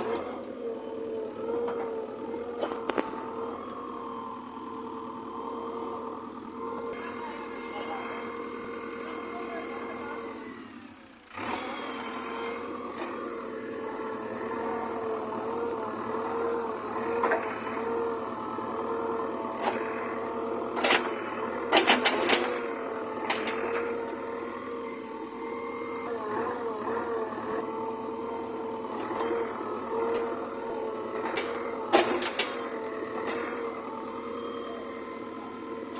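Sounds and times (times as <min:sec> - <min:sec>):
diesel engine running: 0:00.0 - 0:35.9.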